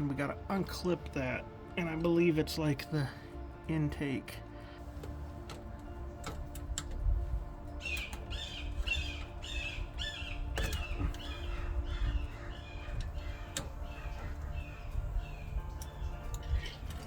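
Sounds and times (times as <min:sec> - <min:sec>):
bird calling: 0:07.6 - 0:17.0.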